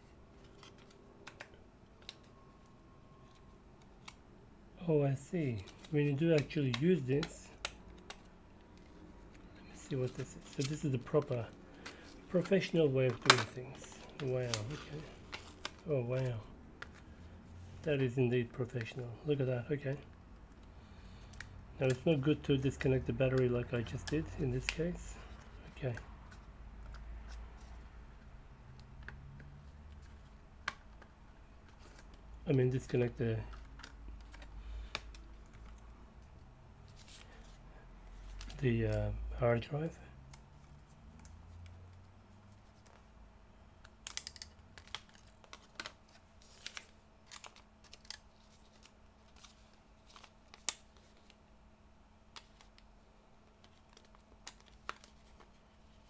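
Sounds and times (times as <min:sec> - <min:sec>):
low steady hum: 0:00.0 - 0:56.0
small laptop parts clicking: 0:05.7 - 0:09.4, 0:33.5 - 0:36.3, 0:43.8 - 0:46.0.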